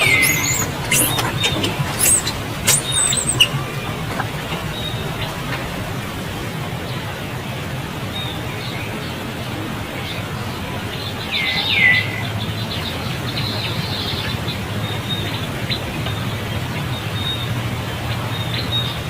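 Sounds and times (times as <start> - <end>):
high downward animal calls: 0.0 - 5.6
low background noise: 0.0 - 19.0.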